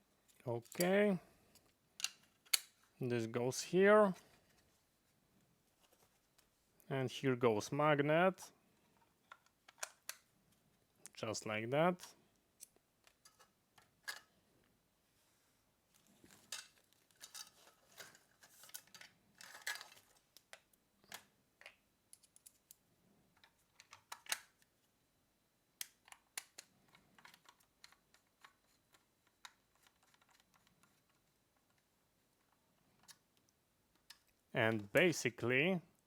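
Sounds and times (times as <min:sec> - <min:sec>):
plastic parts clicking and scraping: 0:01.5 - 0:03.0, 0:08.8 - 0:10.3, 0:12.0 - 0:14.4, 0:16.0 - 0:24.7, 0:25.8 - 0:34.8.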